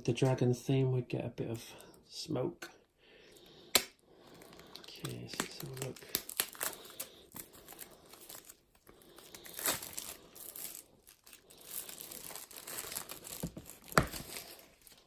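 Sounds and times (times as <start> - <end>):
packaging crinkling and tearing: 4.2 - 15.0.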